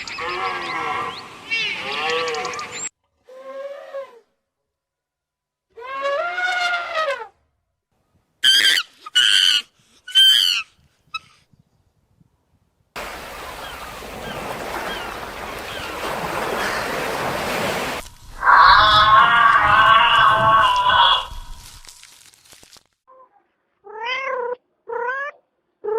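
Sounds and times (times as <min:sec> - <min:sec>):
animal calls: 0:18.4 - 0:21.5.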